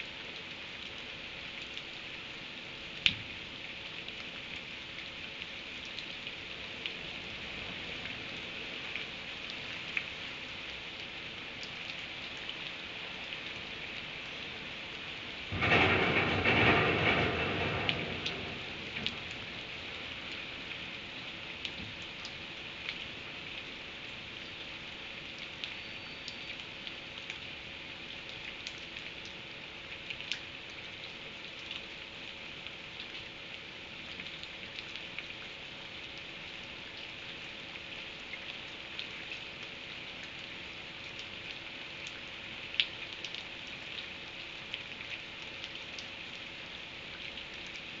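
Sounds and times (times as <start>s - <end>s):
drips ticking on a surface: 0.0s - 7.0s, 8.0s - 16.0s, 17.1s - 48.0s
steady rain: 0.0s - 48.0s
thunder rumble: 15.5s - 20.5s.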